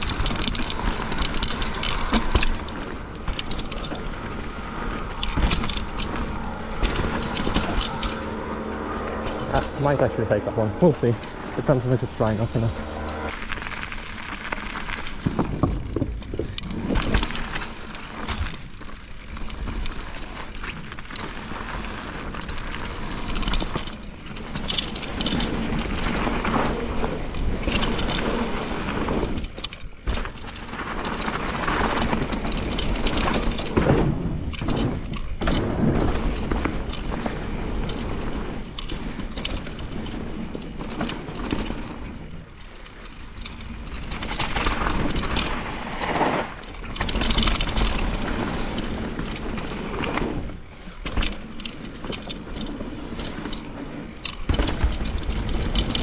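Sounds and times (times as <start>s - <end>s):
bike rattling and clattering: 0.0s - 56.0s
tyres rolling over dirt: 0.0s - 56.0s.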